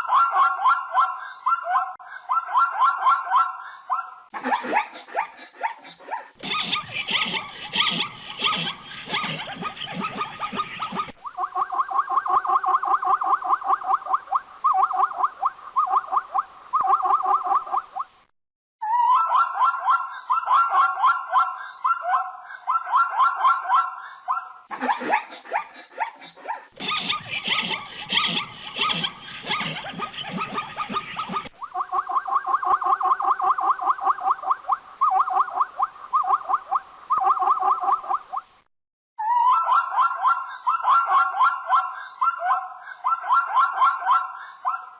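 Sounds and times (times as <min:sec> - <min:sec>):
zebra yelping: 0:04.4 - 0:11.1, 0:24.8 - 0:34.3.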